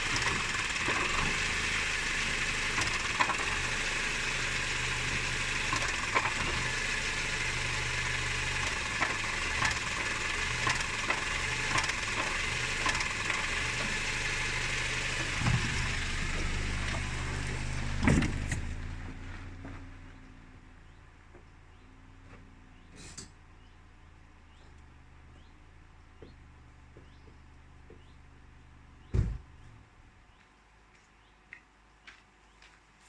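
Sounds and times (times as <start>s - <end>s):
car engine idling: 0.0s - 30.3s
gearbox knocks: 15.2s - 20.3s.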